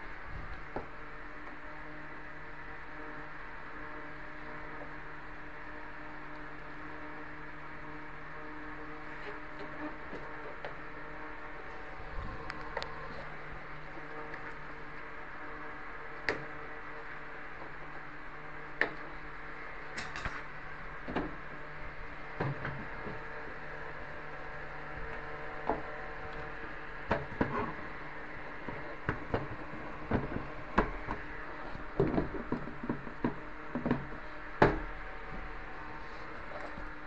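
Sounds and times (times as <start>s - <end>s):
steady low hum: 0.0s - 37.0s
hard objects knocking and clicking: 31.8s - 34.9s.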